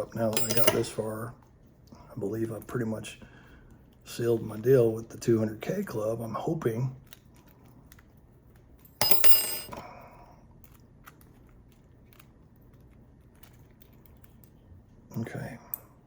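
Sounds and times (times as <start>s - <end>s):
metal tools clattering: 0.2s - 1.0s, 9.0s - 9.8s.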